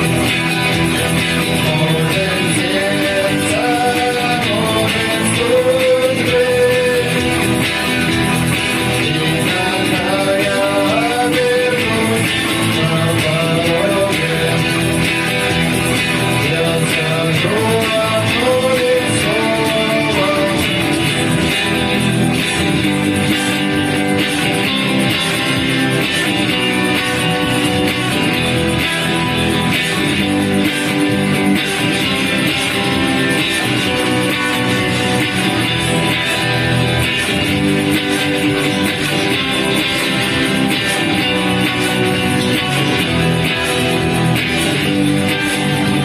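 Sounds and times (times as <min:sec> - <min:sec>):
guitar playing: 0:00.0 - 0:46.0
person singing: 0:01.4 - 0:08.1, 0:08.7 - 0:15.4, 0:16.0 - 0:21.6.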